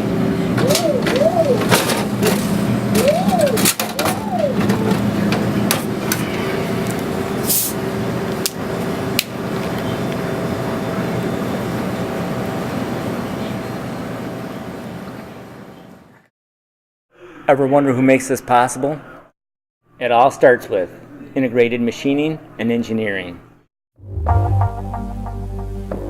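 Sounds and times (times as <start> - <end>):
machine hum: 0.0 - 16.0.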